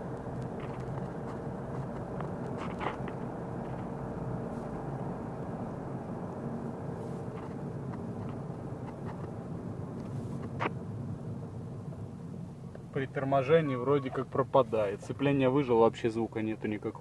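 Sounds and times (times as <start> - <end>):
tyre and drivetrain rumble: 0.0 - 13.0.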